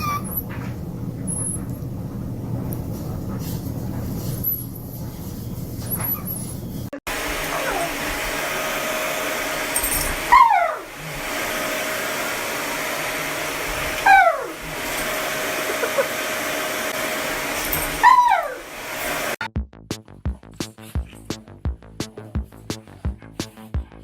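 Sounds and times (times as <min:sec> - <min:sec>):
dog whining: 0:00.0 - 0:01.6, 0:10.2 - 0:10.9, 0:14.0 - 0:14.6, 0:17.8 - 0:18.7
electric blower motor whirring: 0:07.1 - 0:19.4.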